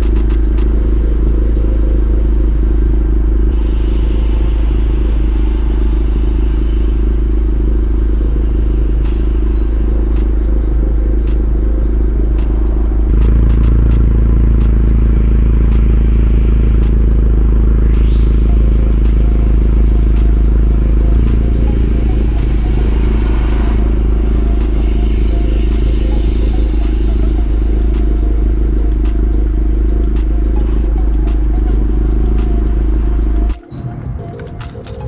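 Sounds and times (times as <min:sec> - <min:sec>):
car engine idling: 0:10.6 - 0:35.0.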